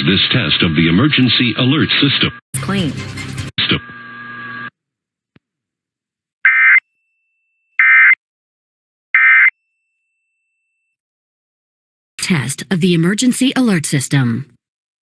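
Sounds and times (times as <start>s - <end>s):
noisy audio: 0.0s - 4.6s.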